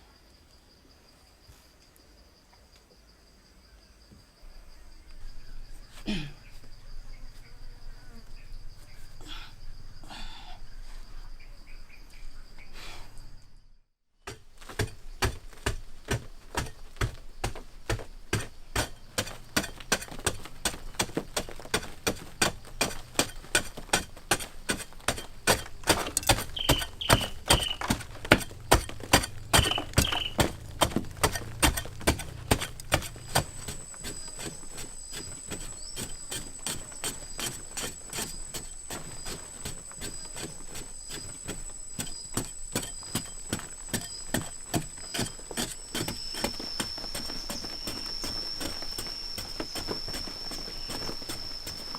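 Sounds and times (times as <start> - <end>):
rapid sharp knocks: 14.3 - 33.5.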